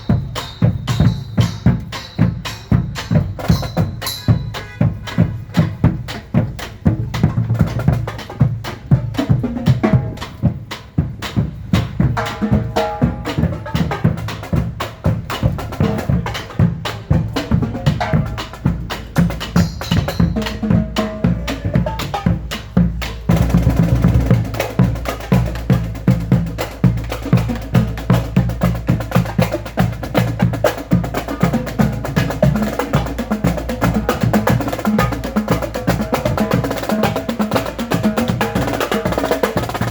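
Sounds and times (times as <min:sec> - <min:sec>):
music with fast drum beat: 0:00.0 - 0:39.9.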